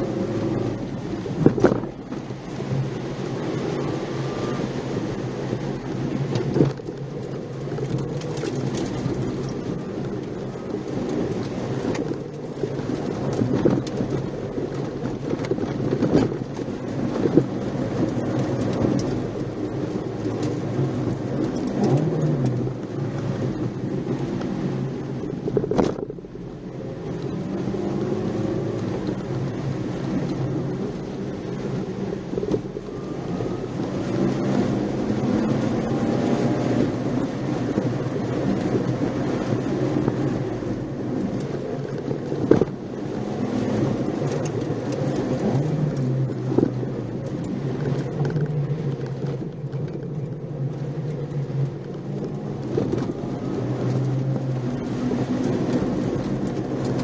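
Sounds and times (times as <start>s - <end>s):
car engine: 0.0s - 57.0s
tyre and road noise: 0.0s - 57.0s.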